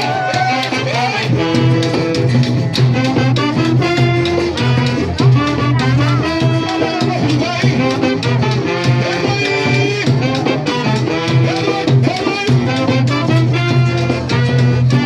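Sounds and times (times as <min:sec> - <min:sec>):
band playing latin dance music: 0:00.0 - 0:15.0.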